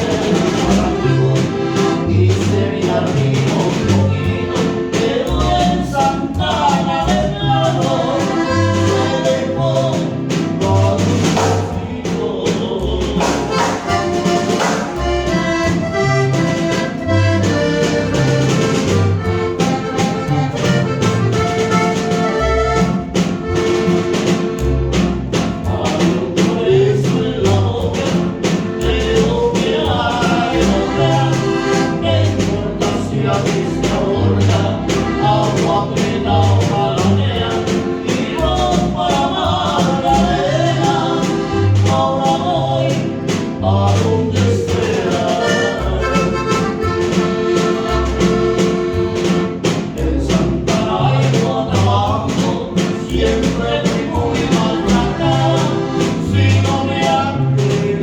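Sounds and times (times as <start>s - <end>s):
singing: 0.0s - 15.0s, 25.6s - 47.1s, 49.8s - 58.0s
band with accordion and brass: 0.0s - 58.0s.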